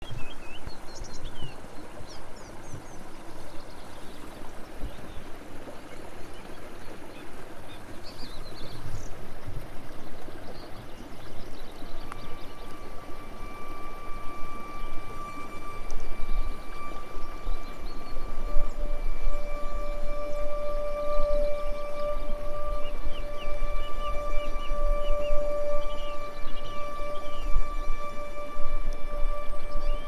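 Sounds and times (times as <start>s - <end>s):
songbirds chirping: 0.0s - 30.0s
steady even tone: 11.9s - 30.0s.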